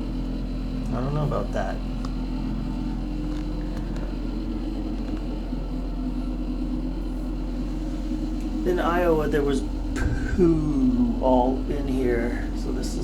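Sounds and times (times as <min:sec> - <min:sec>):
low mechanical hum: 0:00.0 - 0:13.0.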